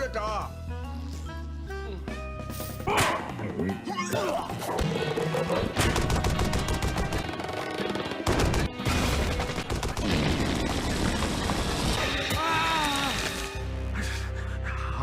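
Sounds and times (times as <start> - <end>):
cartoon action music: 2.8 - 13.4
machine-gun-like cracks: 5.7 - 12.0.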